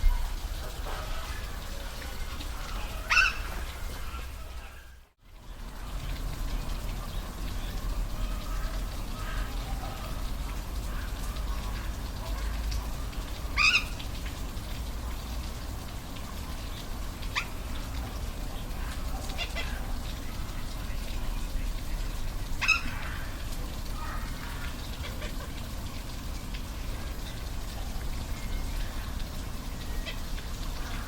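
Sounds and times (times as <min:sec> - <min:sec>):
animal short high calls: 0:03.1 - 0:03.6.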